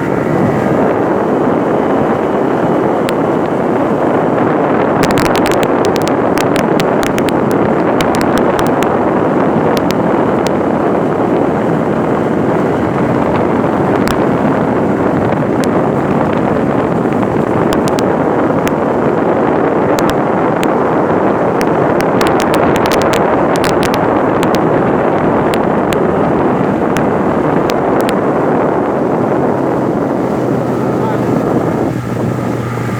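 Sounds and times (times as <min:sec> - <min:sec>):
boat motor and water rushing: 0:00.0 - 0:32.9
wind buffeting microphone: 0:00.0 - 0:32.9
sharp clicks and slaps: 0:05.0 - 0:08.9, 0:14.0 - 0:14.3, 0:17.4 - 0:18.8, 0:21.6 - 0:24.6, 0:26.9 - 0:28.2.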